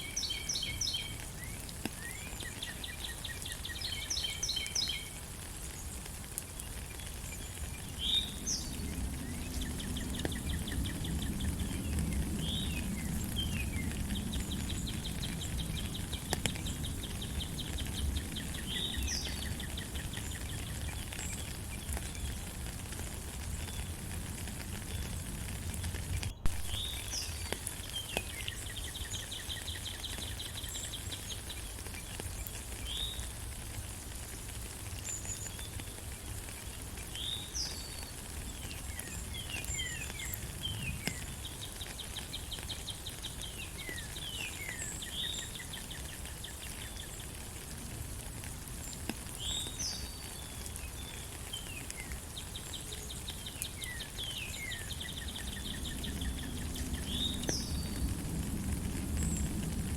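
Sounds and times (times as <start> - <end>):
steady rain: 0.0 - 59.9
birds chirping and trilling: 7.0 - 22.4, 49.4 - 58.2.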